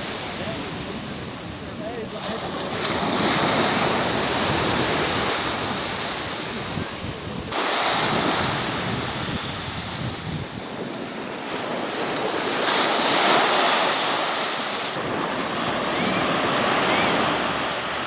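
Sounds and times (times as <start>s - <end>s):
sea waves breaking: 0.0s - 18.0s
wind buffeting microphone: 0.0s - 18.0s.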